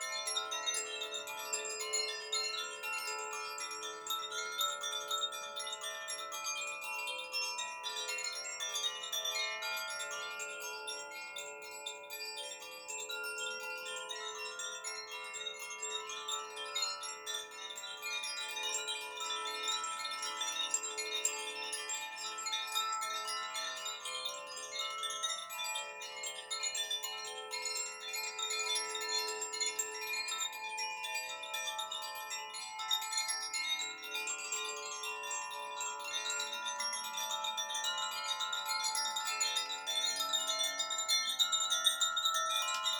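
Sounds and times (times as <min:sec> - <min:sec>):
bamboo wind chimes ringing: 0:00.0 - 0:42.9.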